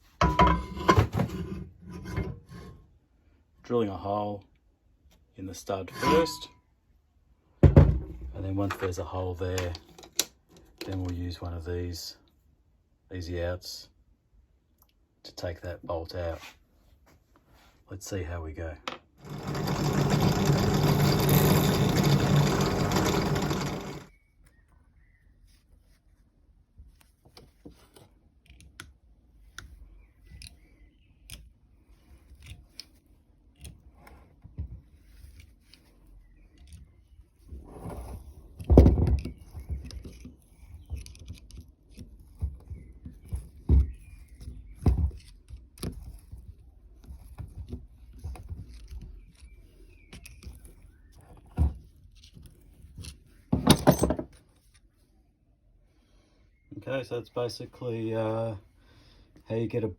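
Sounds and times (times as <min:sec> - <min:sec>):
tool knocks on metal: 0:00.2 - 0:01.1
metal clicks and scrapes: 0:19.2 - 0:24.1.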